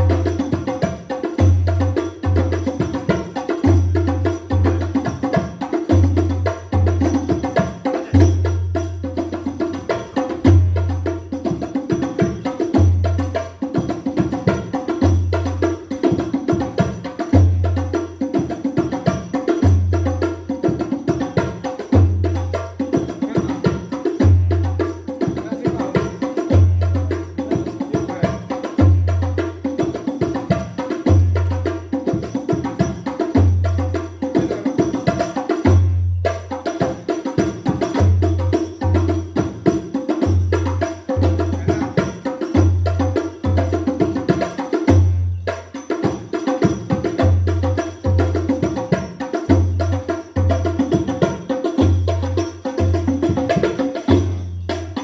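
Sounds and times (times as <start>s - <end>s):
frame drums fast rhythm: 0.0s - 55.0s.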